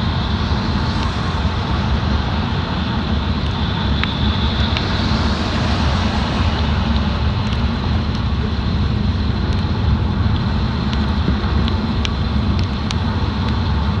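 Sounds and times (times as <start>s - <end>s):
car road and engine rumble: 0.0s - 14.0s
faint clicks: 0.9s - 1.2s.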